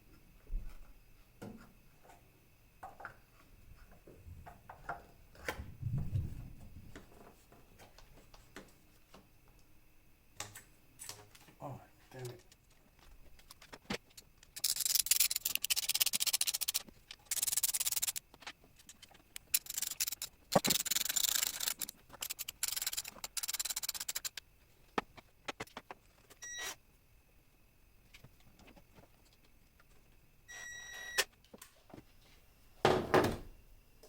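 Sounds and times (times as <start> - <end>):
socket ratchet clicking: 14.4 - 18.2, 19.4 - 24.4.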